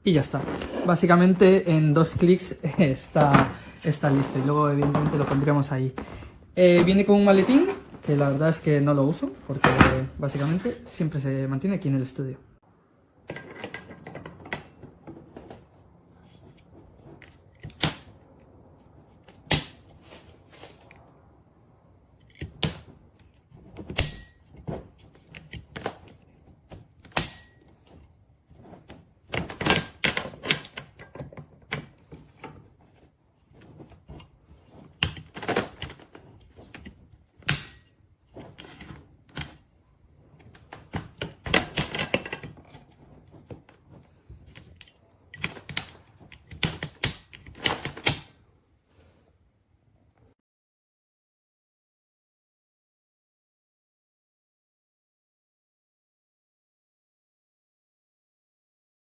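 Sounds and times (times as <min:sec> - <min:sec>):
softbox frame clicking and snapping: 0:45.4 - 0:48.4.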